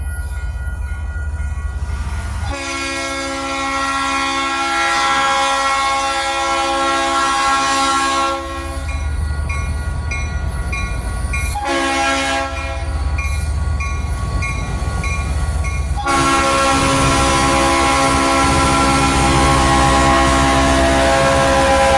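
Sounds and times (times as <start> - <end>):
diesel locomotive rumble: 0.0 - 21.9
locomotive air horn chord: 2.5 - 8.9, 11.6 - 12.9, 16.0 - 21.9.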